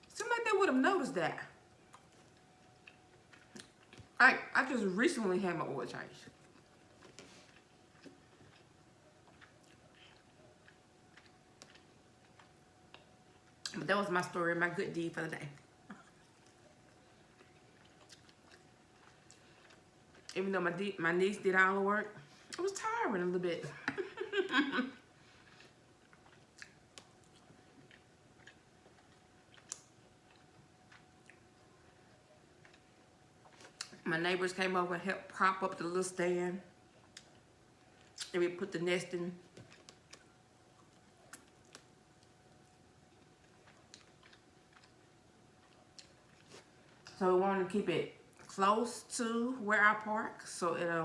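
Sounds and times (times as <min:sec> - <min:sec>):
person chewing food: 0:01.8 - 0:04.2, 0:06.3 - 0:13.7, 0:15.6 - 0:20.4, 0:23.8 - 0:34.0, 0:39.5 - 0:47.2.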